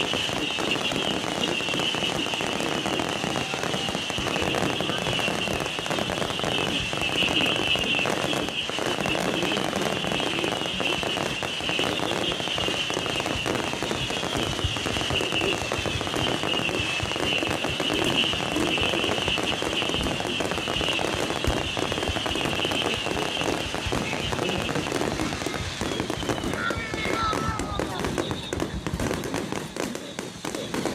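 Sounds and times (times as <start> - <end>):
fireworks crackling: 0.0 - 30.9.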